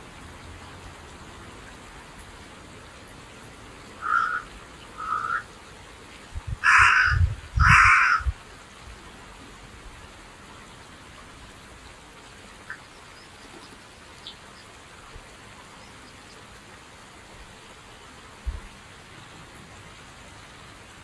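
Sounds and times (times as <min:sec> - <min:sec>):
outdoor background hiss: 0:00.0 - 0:21.0.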